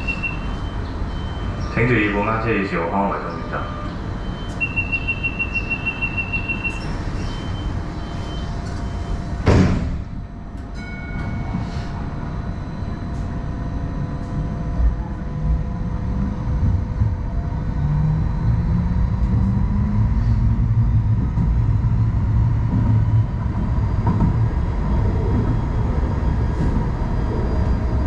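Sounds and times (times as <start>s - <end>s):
high warning beeps: 0.0s - 1.8s, 3.4s - 9.2s
electrical hum and rumble: 0.0s - 10.8s, 11.4s - 28.0s.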